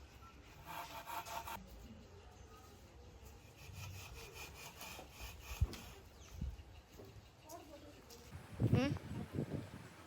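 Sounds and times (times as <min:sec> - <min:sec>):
tool rasping on rough surface: 0:00.6 - 0:01.6, 0:03.4 - 0:06.1.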